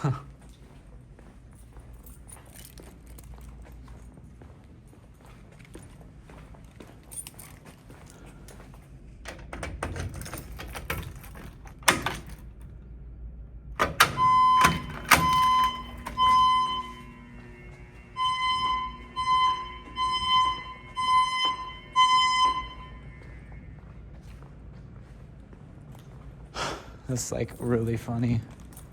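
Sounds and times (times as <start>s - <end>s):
fire alarm pulses: 13.8s - 24.0s.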